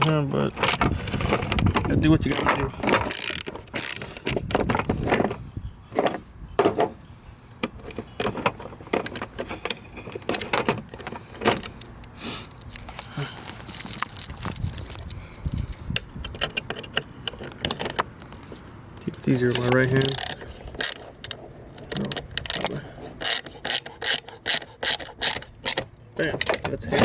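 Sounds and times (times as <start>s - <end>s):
small hardware clicking and rattling: 0.0s - 27.0s.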